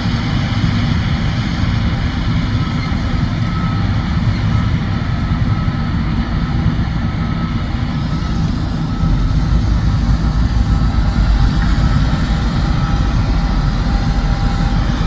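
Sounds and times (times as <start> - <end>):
combine harvester engine drone: 0.0 - 15.0.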